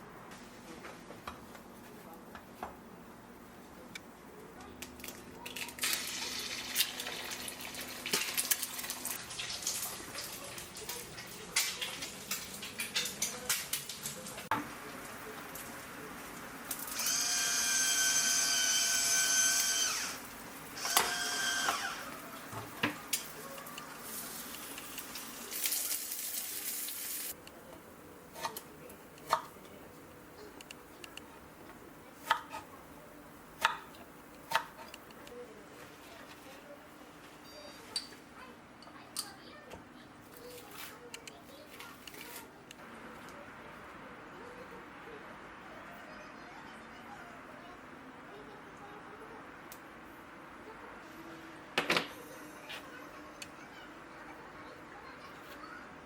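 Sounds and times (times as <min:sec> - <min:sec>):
utensils clattering: 0:08.0 - 0:14.5
kitchen appliance motor whining: 0:16.9 - 0:22.2.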